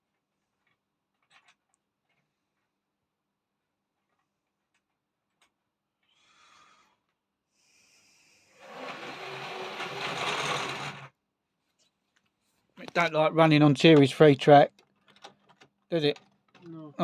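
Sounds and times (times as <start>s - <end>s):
model train motor whirring: 8.5s - 11.1s.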